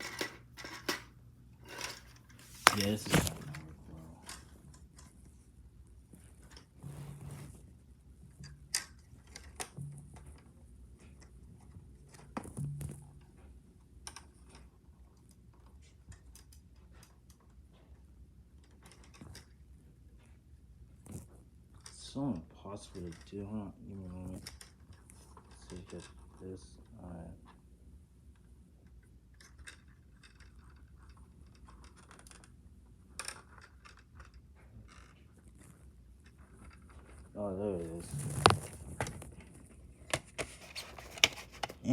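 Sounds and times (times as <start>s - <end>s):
plastic dvd case clicking: 40.1s - 41.9s.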